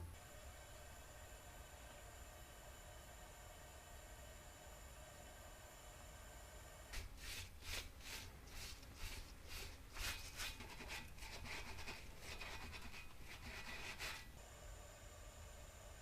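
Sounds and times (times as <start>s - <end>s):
rubbing and scrubbing: 7.0s - 14.3s.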